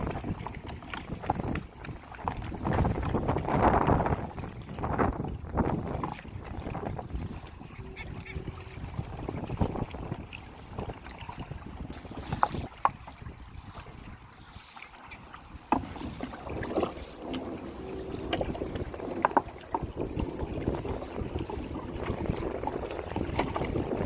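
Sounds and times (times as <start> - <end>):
water sloshing against hull: 0.0 - 24.0.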